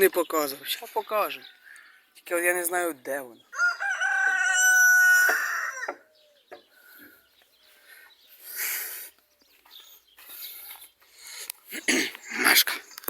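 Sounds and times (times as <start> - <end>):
rooster crowing: 3.5 - 6.1.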